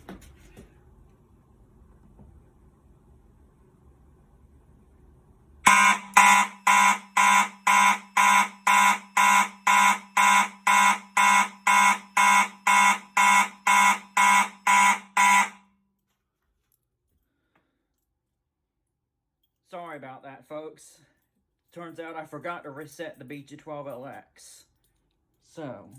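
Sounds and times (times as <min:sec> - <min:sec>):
pulsing fire alarm horns: 0:05.6 - 0:15.7.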